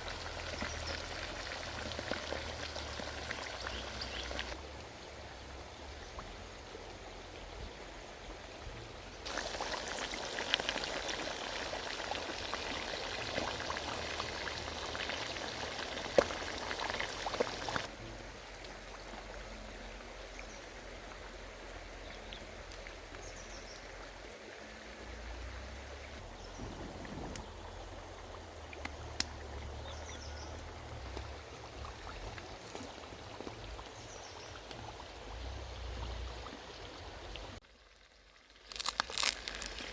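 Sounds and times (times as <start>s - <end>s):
pork sizzling in oil: 9.3s - 17.9s, 38.5s - 39.9s.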